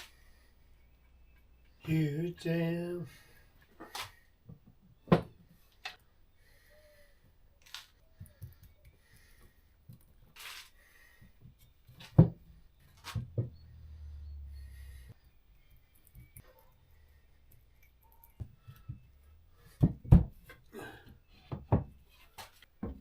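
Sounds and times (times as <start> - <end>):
low hum: 12.8 - 16.0.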